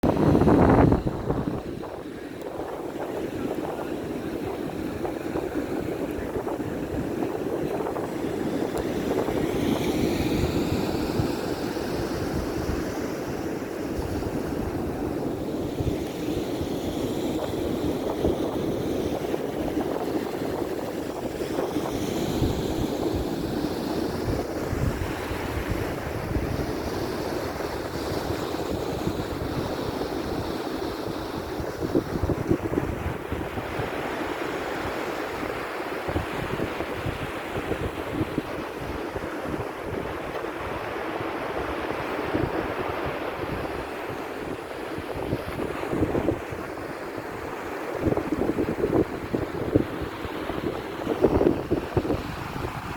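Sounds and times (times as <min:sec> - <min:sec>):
waves washing onto beach: 0:00.0 - 0:52.9
wind buffeting microphone: 0:00.0 - 0:52.9.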